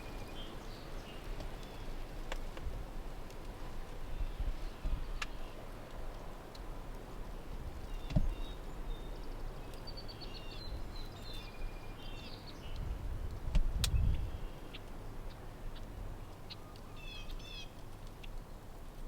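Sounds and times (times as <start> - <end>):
wind buffeting microphone: 0.0 - 9.6, 12.6 - 14.5
songbird twittering: 7.8 - 12.9, 16.4 - 17.8.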